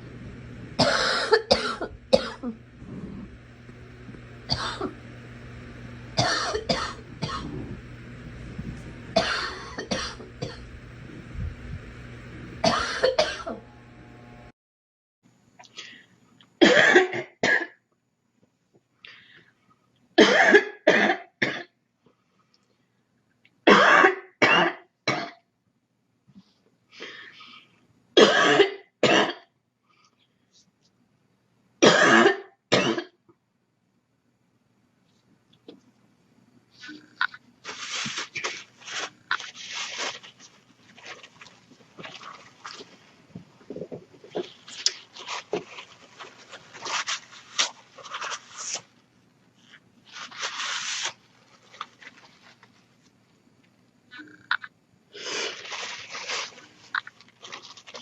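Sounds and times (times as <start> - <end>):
steady hum: 0.0 - 14.5
girl coughing: 0.8 - 2.6, 4.5 - 5.0, 6.2 - 7.6, 9.2 - 10.6, 12.6 - 13.6, 16.6 - 17.7, 20.2 - 21.7, 23.7 - 25.3, 28.2 - 29.4, 31.8 - 33.1.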